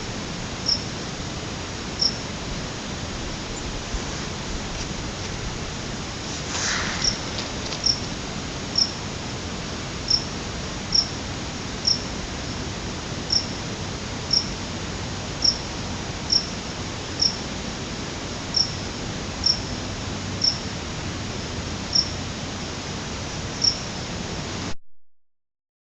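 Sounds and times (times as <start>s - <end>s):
background hiss: 0.0s - 24.7s
insect chirping: 0.6s - 1.2s, 1.9s - 2.4s, 6.5s - 9.3s, 10.0s - 14.7s, 15.3s - 17.7s, 18.3s - 20.8s, 21.4s - 22.3s, 23.1s - 24.1s.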